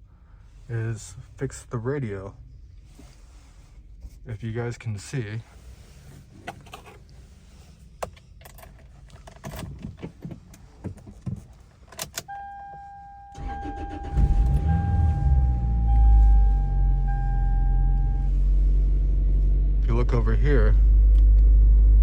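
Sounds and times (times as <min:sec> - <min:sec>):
car keys jangling: 0:08.0 - 0:14.7
car engine starting and idling: 0:12.0 - 0:22.0
dashboard warning chime: 0:12.3 - 0:18.4.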